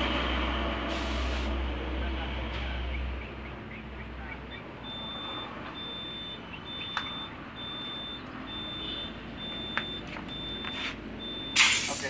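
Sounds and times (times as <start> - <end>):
high electronic beeps: 3.5 - 12.0
short loud hiss: 11.6 - 12.0.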